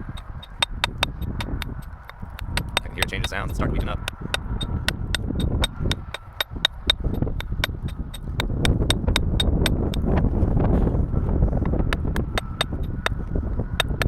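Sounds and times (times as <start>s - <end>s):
steady low rumble: 0.0s - 14.0s
metal tool tapping rock: 0.1s - 10.2s.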